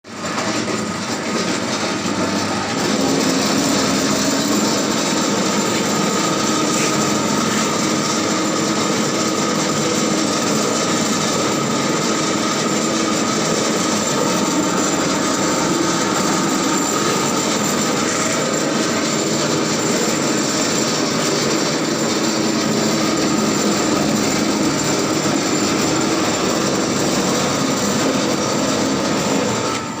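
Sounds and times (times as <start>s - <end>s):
machine motor humming with whine: 0.2s - 30.0s.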